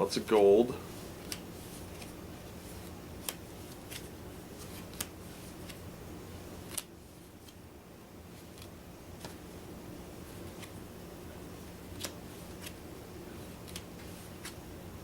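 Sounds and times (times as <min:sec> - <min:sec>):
faint low hum: 0:00.0 - 0:15.0
cards clicking and snapping: 0:01.2 - 0:01.4, 0:02.8 - 0:05.8, 0:06.6 - 0:06.9, 0:11.9 - 0:12.8, 0:13.6 - 0:14.6.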